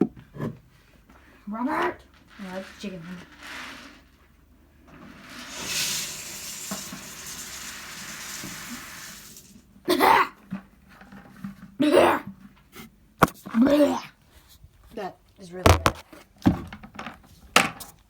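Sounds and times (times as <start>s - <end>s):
feed pellets pouring from bag: 2.3s - 4.1s, 5.1s - 9.7s
person coughing: 9.9s - 10.4s.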